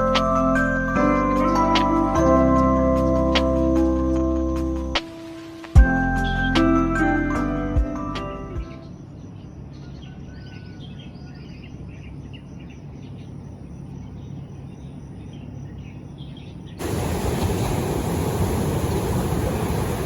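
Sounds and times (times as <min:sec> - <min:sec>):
low outdoor hum: 0:00.0 - 0:20.0
small birds chirping: 0:08.5 - 0:20.0
wind and surf rushing: 0:16.8 - 0:20.0.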